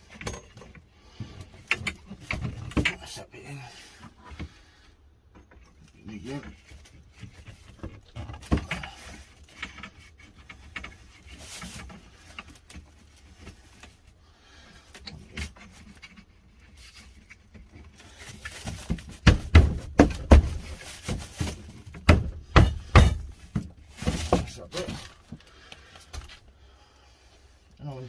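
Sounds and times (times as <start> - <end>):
shelving parts clicking and rattling: 0.0 - 26.5
loud knocks: 19.2 - 20.7, 22.0 - 23.3.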